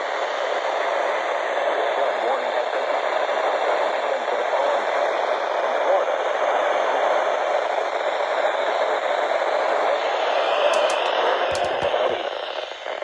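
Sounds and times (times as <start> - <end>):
short clicks: 10.7 - 12.3.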